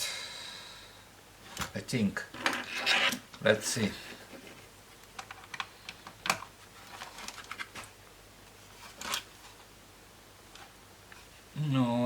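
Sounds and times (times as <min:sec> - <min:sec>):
plastic laptop parts clicking: 0:05.1 - 0:07.9.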